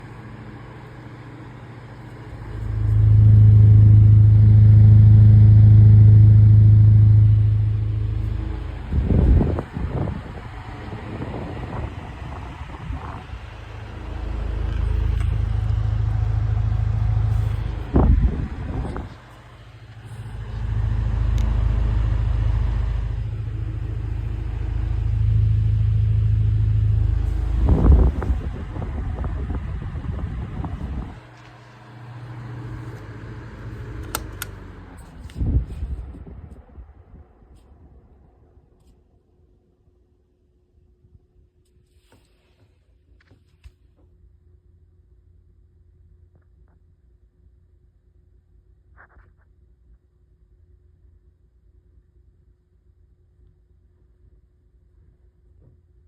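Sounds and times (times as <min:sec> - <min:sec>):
table fan motor hum: 0:00.0 - 0:35.8
air rumbling on microphone: 0:02.3 - 0:38.8.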